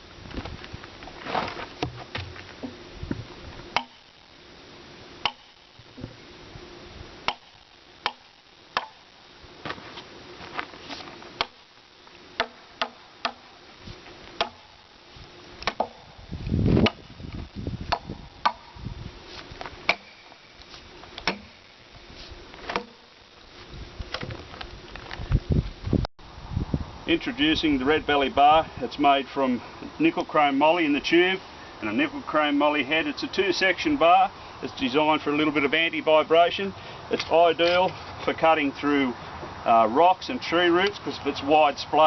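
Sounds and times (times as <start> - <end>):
wedge strikes splitting timber: 3.8 - 4.0, 5.2 - 5.5, 7.3 - 9.0, 11.4 - 11.6, 12.4 - 13.4, 14.4 - 14.7, 15.6 - 16.0, 17.9 - 18.7, 19.9 - 20.2, 21.2 - 21.6, 22.6 - 23.0.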